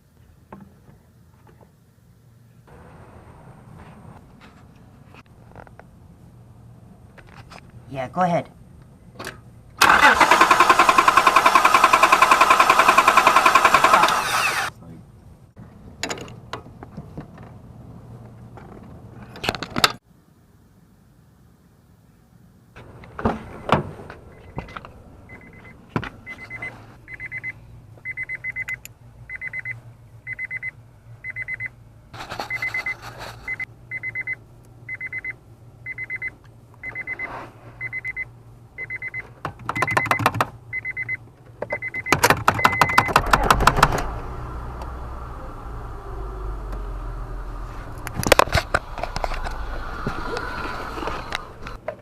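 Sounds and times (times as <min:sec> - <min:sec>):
engine low rumble: 0:00.0 - 0:39.4, 0:42.8 - 0:52.0
starter motor cranking: 0:09.8 - 0:14.7
car warning chime beeping: 0:25.3 - 0:31.7, 0:32.5 - 0:37.2, 0:37.8 - 0:39.2, 0:39.9 - 0:43.3.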